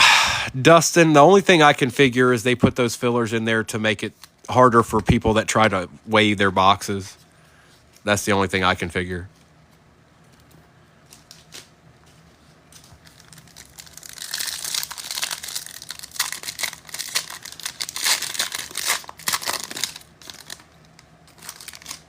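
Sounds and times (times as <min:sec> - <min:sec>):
wrapper crinkling: 0:11.0 - 0:22.0.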